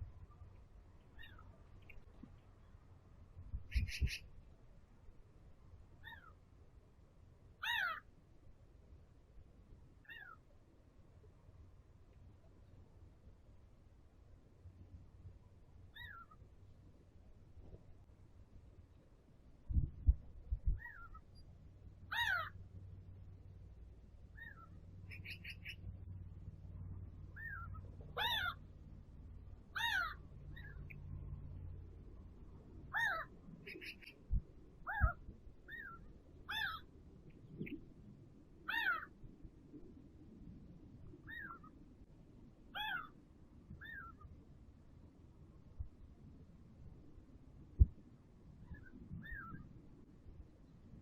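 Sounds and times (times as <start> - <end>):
low background hum: 0.0 - 51.0
wild birds calling: 1.1 - 1.6, 6.0 - 6.4, 7.6 - 8.0, 10.0 - 10.4, 15.9 - 16.4, 22.1 - 22.6, 24.4 - 25.9, 27.3 - 28.6, 29.7 - 31.0, 32.9 - 34.2, 34.8 - 36.9, 38.7 - 39.1, 41.3 - 41.7, 42.8 - 43.2.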